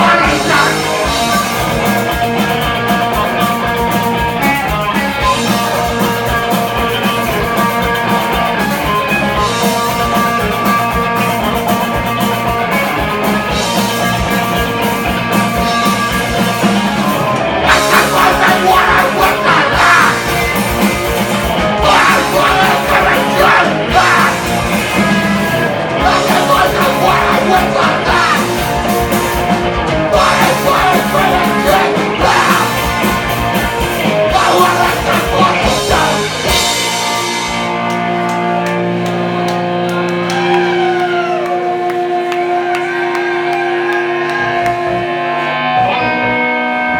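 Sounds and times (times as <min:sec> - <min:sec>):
shouted vocals: 0:00.0 - 0:01.3, 0:17.7 - 0:20.8, 0:21.6 - 0:29.2, 0:30.1 - 0:33.3, 0:34.1 - 0:36.5, 0:40.0 - 0:45.2
live punk rock band: 0:00.0 - 0:46.9.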